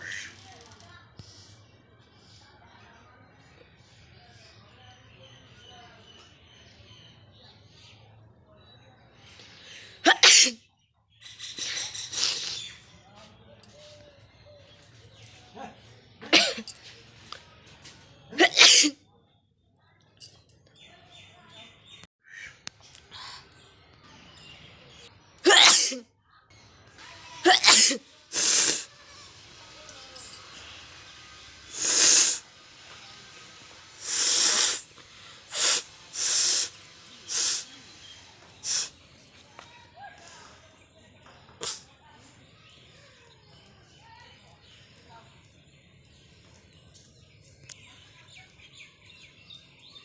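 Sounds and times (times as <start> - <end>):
person sneezing: 10.0 - 10.6, 25.5 - 26.0, 27.5 - 28.9
sniff: 11.6 - 12.8, 28.3 - 28.9, 31.7 - 32.5, 34.0 - 37.8, 38.6 - 39.0, 41.6 - 41.9
person blowing through nose: 28.3 - 28.9, 31.7 - 32.4, 34.0 - 34.9, 35.5 - 36.7, 38.6 - 38.9.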